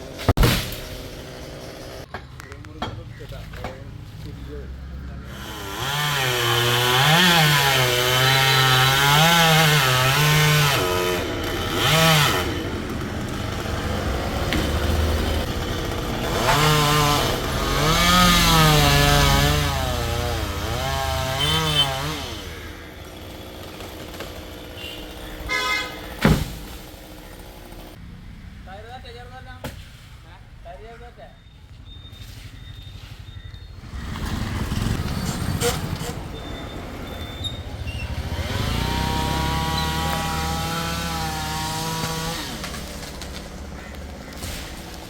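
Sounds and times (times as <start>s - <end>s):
chainsaw revving: 5.2s - 28.0s, 33.8s - 45.0s.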